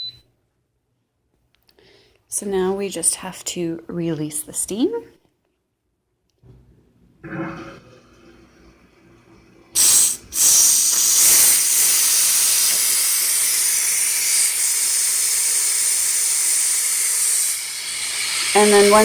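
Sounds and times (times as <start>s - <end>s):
steam rushing from valve: 9.8s - 19.0s.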